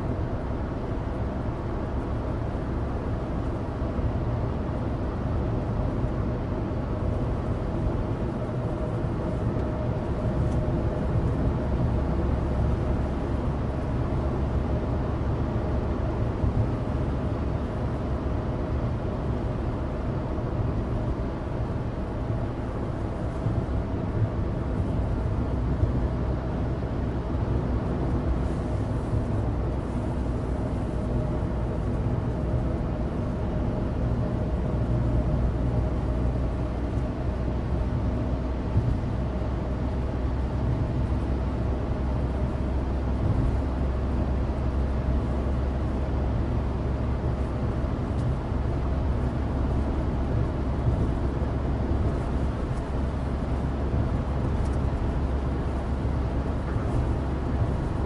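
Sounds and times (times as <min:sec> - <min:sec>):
tyre road noise: 0:00.0 - 0:58.0.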